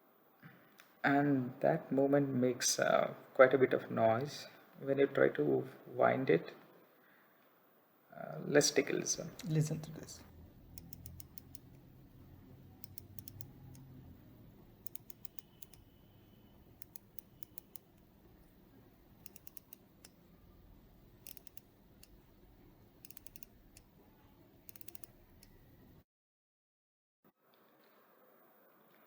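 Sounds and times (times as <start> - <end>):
watch winding ratchet clicks: 10.6 - 11.9, 12.8 - 14.0, 14.8 - 16.0, 16.8 - 18.0, 19.2 - 20.2, 21.2 - 22.2, 23.0 - 23.9, 24.6 - 25.6.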